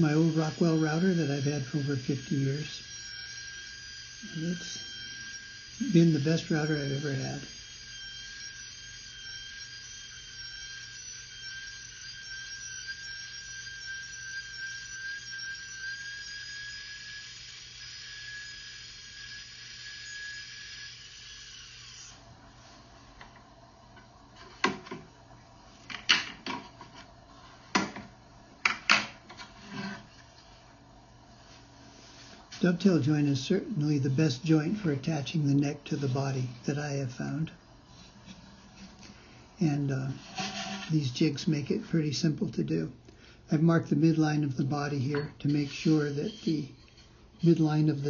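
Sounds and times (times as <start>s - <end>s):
electric router whining: 0.0s - 29.2s.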